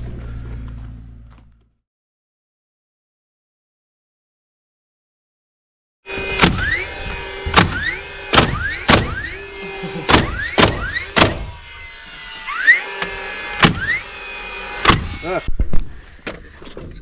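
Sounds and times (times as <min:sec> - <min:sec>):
hammer blows on timber: 0:06.1 - 0:11.6.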